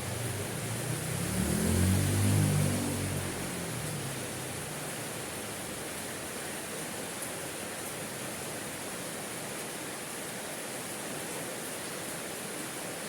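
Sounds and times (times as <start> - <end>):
steady rainfall: 0.0 - 13.0.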